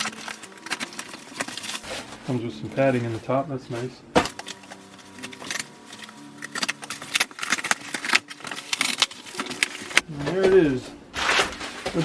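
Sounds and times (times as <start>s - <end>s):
packing rustling and scraping: 0.0s - 2.2s, 4.2s - 10.0s.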